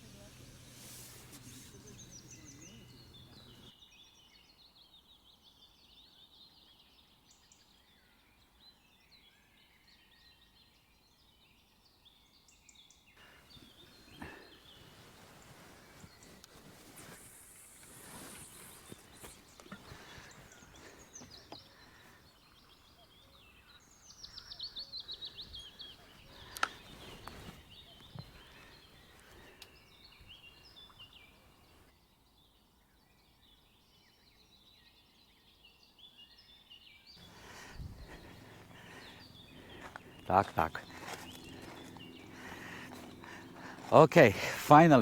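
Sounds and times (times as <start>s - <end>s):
faint songbirds singing: 0.0s - 45.0s.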